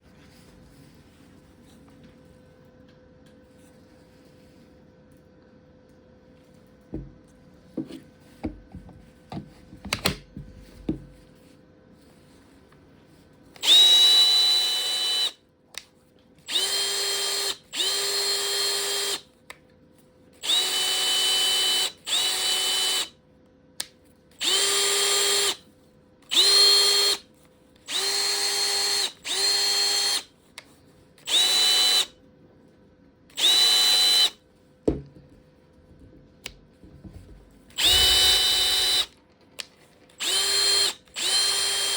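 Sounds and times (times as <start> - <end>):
cordless drill whine: 13.6 - 15.4, 16.5 - 19.2, 20.4 - 23.2, 24.4 - 25.6, 26.3 - 27.2, 27.8 - 30.3, 31.2 - 32.2, 33.3 - 34.4, 37.7 - 39.2, 40.2 - 41.9.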